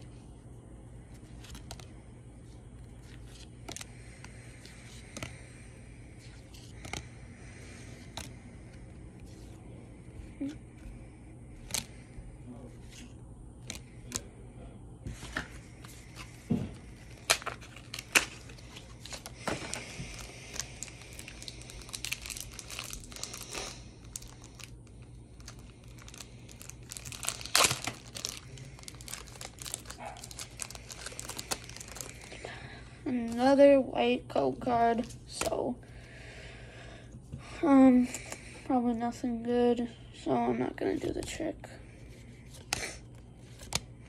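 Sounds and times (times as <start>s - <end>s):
foil wrapper crinkling and tearing: 17.0s - 32.4s.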